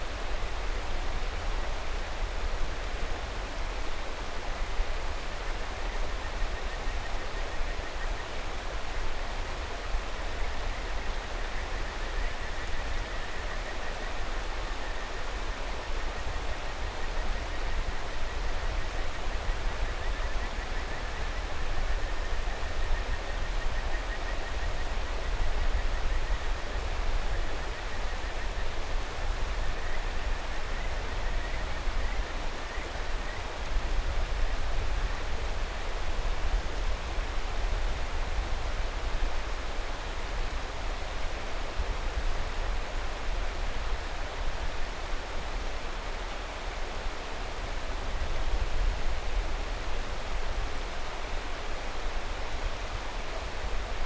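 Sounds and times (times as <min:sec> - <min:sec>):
mountain river rushing: 0:20.6 - 0:54.0.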